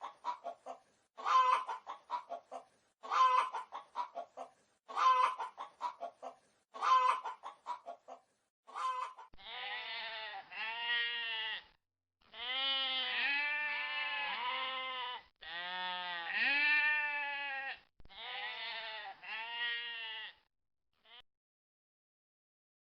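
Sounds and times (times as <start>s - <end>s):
chicken clucking: 0.0s - 9.4s
farm animal bleating: 8.8s - 21.2s.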